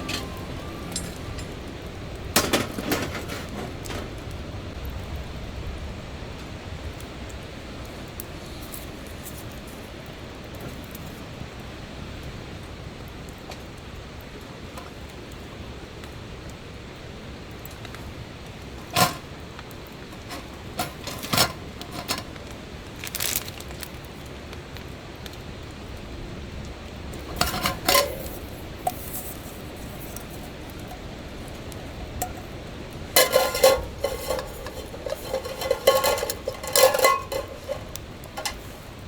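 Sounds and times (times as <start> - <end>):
cookware and utensils clattering: 0.0 - 4.3, 18.7 - 19.4, 20.0 - 22.4, 27.2 - 39.0
low background noise: 0.0 - 39.0.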